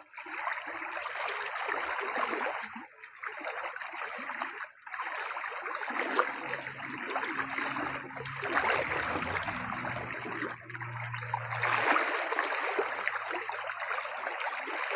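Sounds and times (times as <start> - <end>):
rushing water-like noise: 0.0 - 14.9
low steady hum: 5.8 - 13.5.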